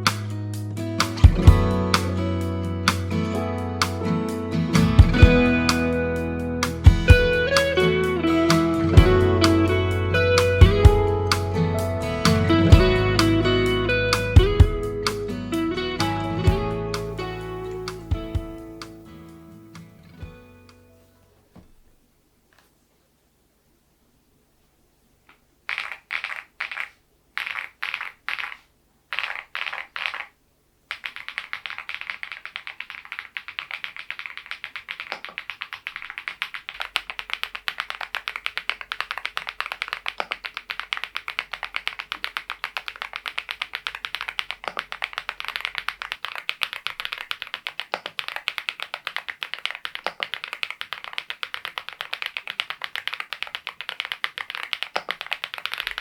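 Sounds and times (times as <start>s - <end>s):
mechanical keyboard typing: 30.9s - 56.0s.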